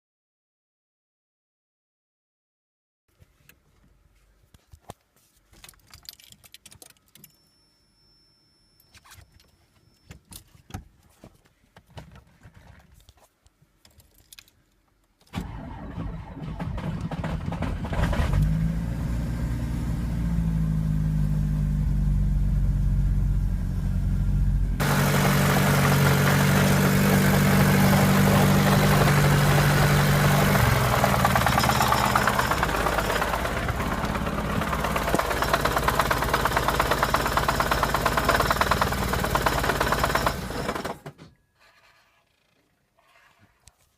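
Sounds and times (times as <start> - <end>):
car engine starting and running: 15.3 - 41.2
engine knock: 24.8 - 41.1.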